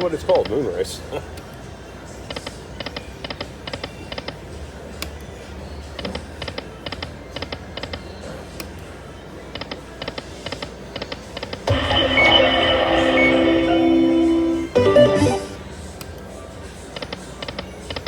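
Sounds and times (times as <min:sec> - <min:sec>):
slot machine reels clicking: 0:11.7 - 0:15.6
casino background hum: 0:11.7 - 0:15.9.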